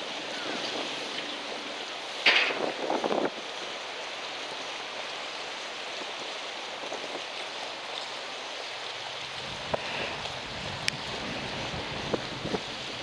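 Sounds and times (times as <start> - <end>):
strong wind: 0.0 - 3.9, 9.0 - 13.0
harbour water rushing: 0.0 - 13.0.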